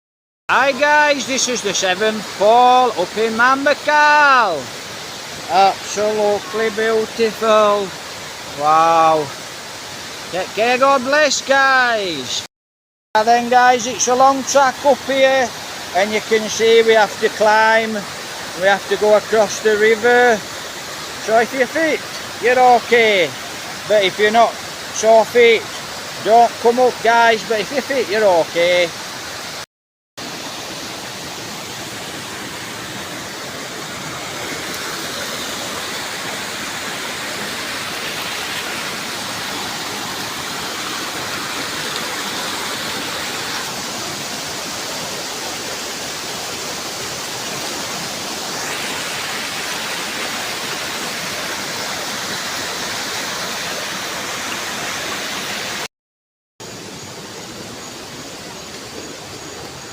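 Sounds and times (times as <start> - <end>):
waterfall rushing: 0.5 - 12.5, 13.2 - 29.6, 30.2 - 55.9, 56.6 - 59.9.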